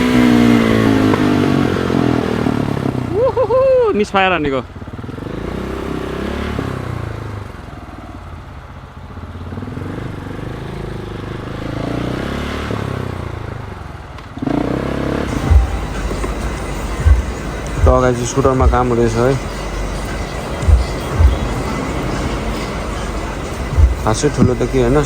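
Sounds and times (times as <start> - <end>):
motorcycle engine revving: 0.0 - 3.4, 4.4 - 25.0
low rumble with thumps: 15.3 - 25.0.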